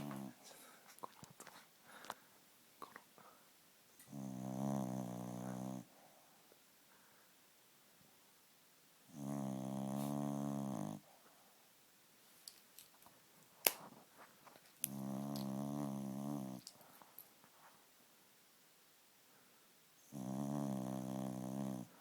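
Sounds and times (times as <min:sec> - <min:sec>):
pet snoring: 0:00.0 - 0:00.4, 0:04.0 - 0:05.9, 0:09.1 - 0:11.1, 0:14.8 - 0:16.7, 0:20.0 - 0:22.0.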